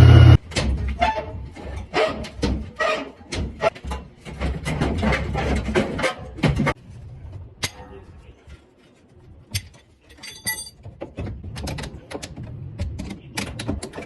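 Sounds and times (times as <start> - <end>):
washing machine knocking and clicking: 3.3 - 6.8, 10.8 - 14.0.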